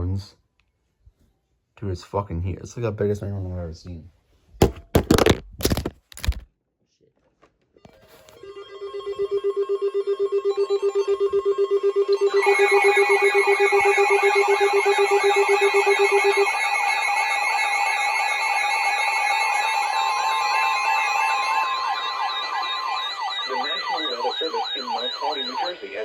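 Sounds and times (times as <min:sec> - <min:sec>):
higher warbling alarm: 0:08.4 - 0:26.0.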